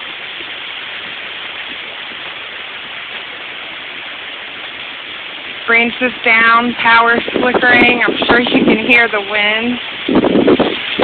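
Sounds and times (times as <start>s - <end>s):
hurricane wind and rain hiss: 0.0s - 11.0s.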